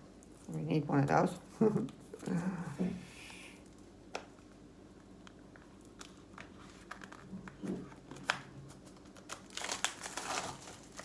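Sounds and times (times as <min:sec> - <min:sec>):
plastic packaging crinkling: 0:05.2 - 0:11.0.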